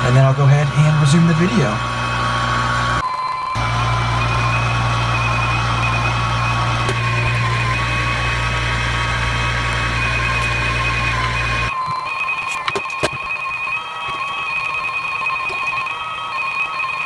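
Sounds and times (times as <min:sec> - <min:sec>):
hot-air blower hum with whine: 0:00.0 - 0:11.8.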